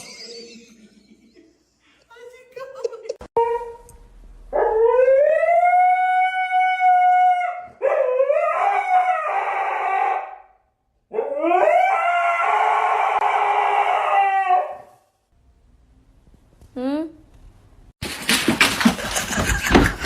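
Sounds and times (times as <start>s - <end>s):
dog howling: 4.6s - 10.5s, 11.1s - 15.0s.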